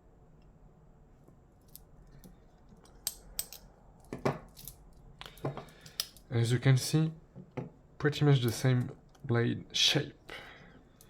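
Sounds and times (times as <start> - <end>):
pocket knives clicking: 5.8 - 6.2.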